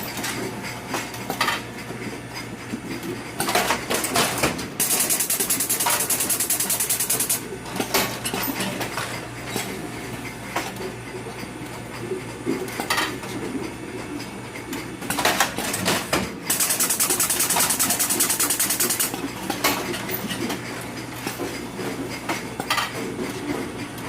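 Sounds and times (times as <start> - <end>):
fast ticking clatter: 4.8 - 7.4, 16.5 - 19.1.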